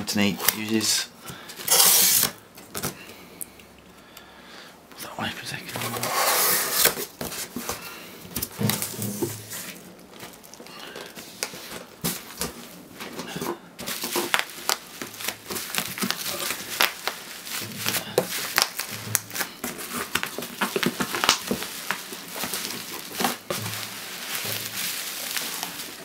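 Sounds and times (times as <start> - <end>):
bubble wrap crinkling: 1.6 - 2.9, 5.8 - 26.0.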